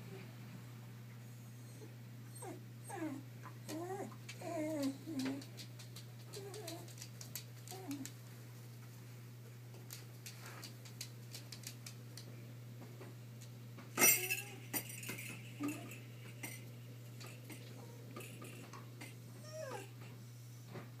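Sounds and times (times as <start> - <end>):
dog whining and crying: 1.4 - 5.5, 6.3 - 7.0, 19.3 - 20.0.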